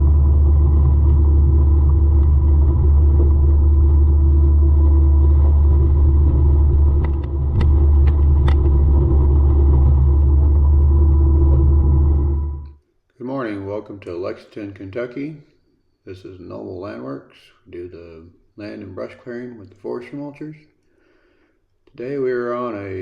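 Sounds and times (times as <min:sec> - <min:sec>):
mulcher running with whine: 0:00.0 - 0:12.7.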